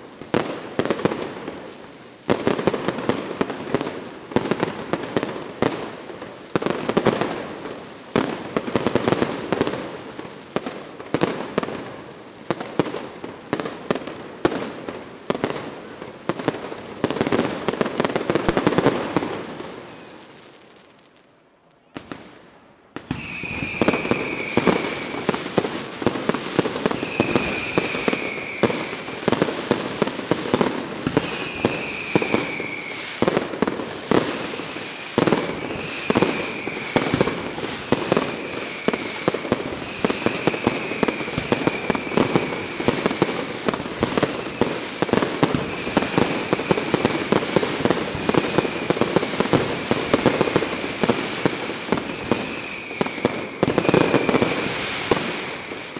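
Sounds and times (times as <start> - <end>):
fireworks banging and crackling: 0.0 - 21.0, 21.8 - 55.9
shrill firework whistles: 23.0 - 55.9.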